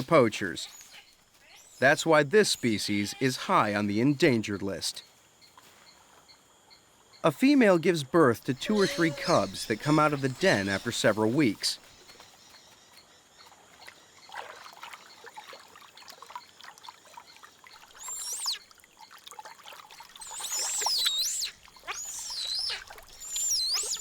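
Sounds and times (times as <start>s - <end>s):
otter cubs squealing: 8.5s - 11.8s, 18.0s - 18.6s, 20.2s - 24.0s
faint trickling water: 13.0s - 24.0s.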